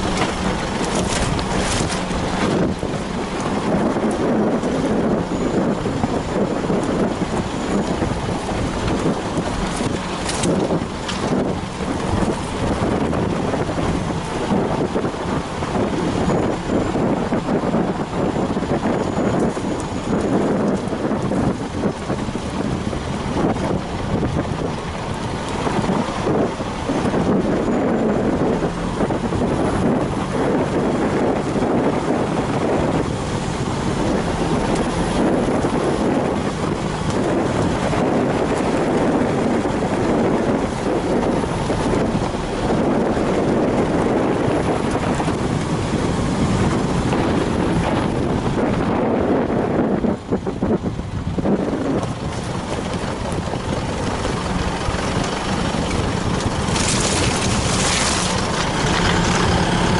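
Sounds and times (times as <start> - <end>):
vehicle engine and tyre noise: 0.0 - 59.9
knocks and rattles: 52.0 - 59.9.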